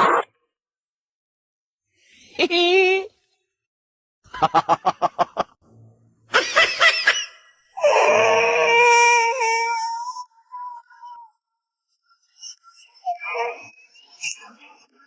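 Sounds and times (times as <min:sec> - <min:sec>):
rapid laughter: 0:04.3 - 0:05.5
long held scream: 0:07.8 - 0:09.9.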